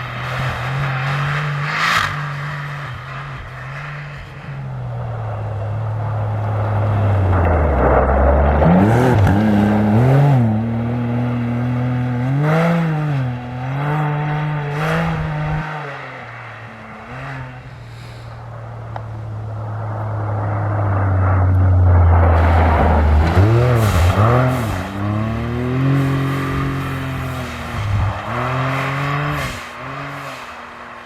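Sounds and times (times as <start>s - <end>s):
car engine passing and revving: 0.0s - 31.0s
tyre noise rush: 14.1s - 31.0s.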